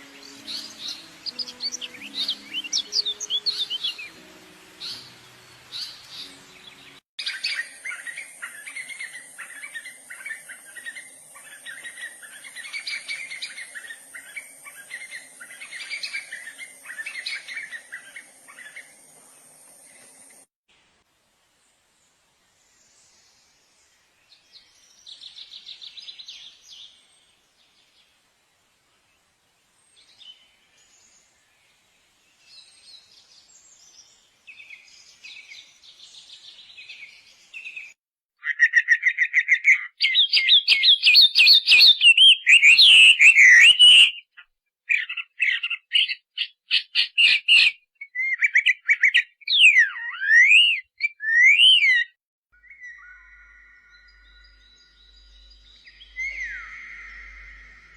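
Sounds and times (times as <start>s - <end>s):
birds singing and calling: 0.0s - 20.3s, 32.5s - 57.9s.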